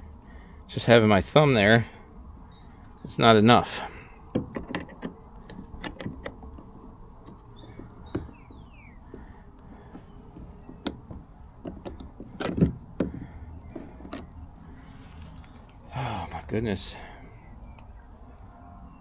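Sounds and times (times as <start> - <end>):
socket wrench clicks and knocks: 4.3 - 8.4, 9.9 - 14.4.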